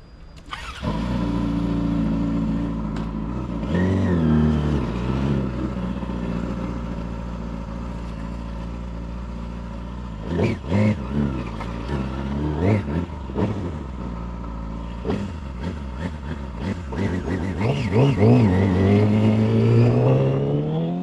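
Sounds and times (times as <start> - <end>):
engine rev blip: 0.0 - 4.5
motorcycle engine starting and idling: 0.4 - 21.0.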